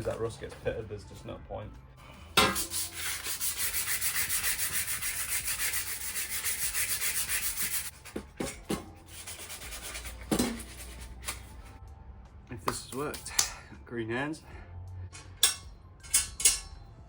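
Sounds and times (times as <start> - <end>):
sandpaper scratching on steel: 2.4 - 11.8.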